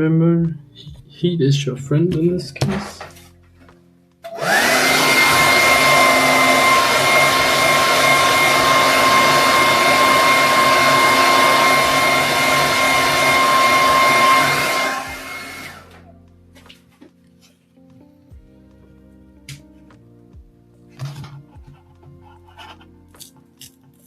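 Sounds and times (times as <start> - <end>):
hair dryer whining and blowing: 4.2 - 16.1.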